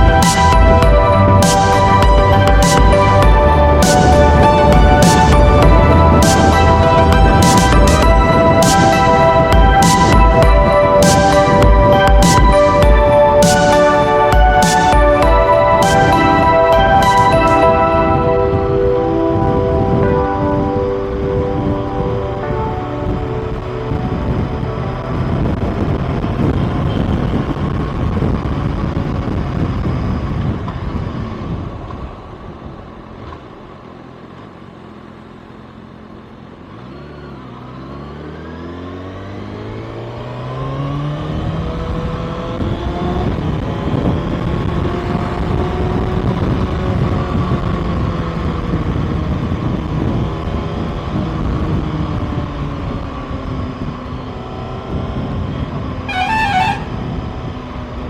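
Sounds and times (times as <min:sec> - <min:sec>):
wind rush: 0:00.0 - 0:32.8, 0:41.5 - 0:54.0
motorcycle engine: 0:00.0 - 0:58.0.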